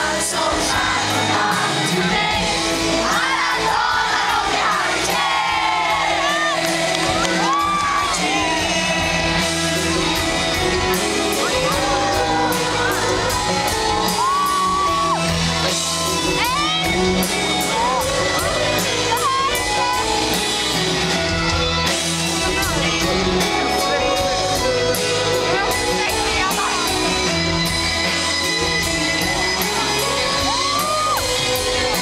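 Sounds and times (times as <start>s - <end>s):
drum beat: 0.0s - 32.0s
live rock band playing: 0.0s - 32.0s
people shouting and whooping: 3.0s - 10.2s, 11.4s - 16.9s, 29.4s - 32.0s.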